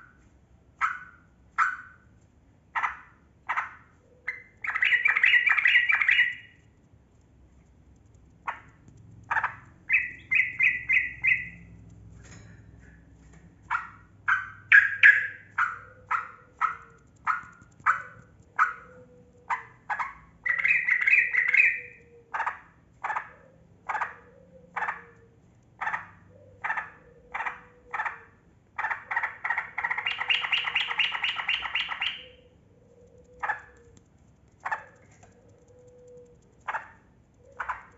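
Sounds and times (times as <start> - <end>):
bird singing chirped notes: 4.3 - 6.5, 9.9 - 11.7, 14.4 - 15.6, 20.5 - 22.0, 29.8 - 32.4
bird rolling trills: 9.3 - 11.8.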